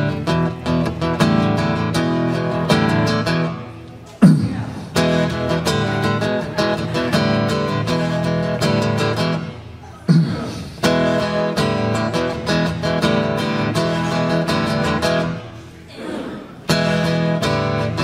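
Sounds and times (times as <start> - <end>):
acoustic guitar strumming: 0.0 - 18.0
low grunt: 9.8 - 11.2, 15.9 - 17.3.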